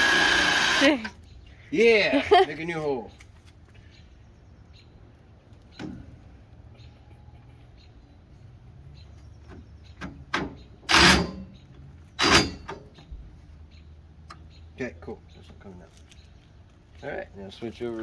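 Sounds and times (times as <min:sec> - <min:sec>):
power drill drilling: 0:00.0 - 0:01.1.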